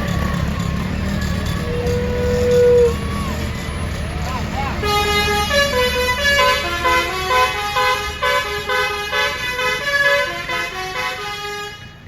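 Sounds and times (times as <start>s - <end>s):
bus horn playing tune: 4.7s - 12.0s.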